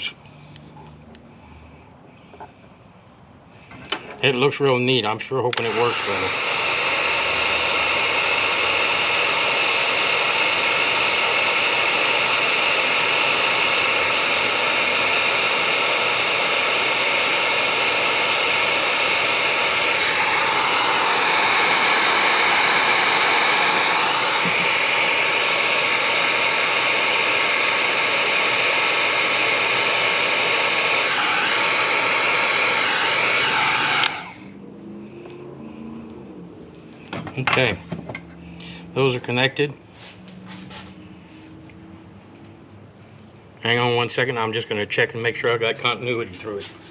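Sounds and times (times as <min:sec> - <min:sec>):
electric heat gun blowing: 0:05.0 - 0:36.2.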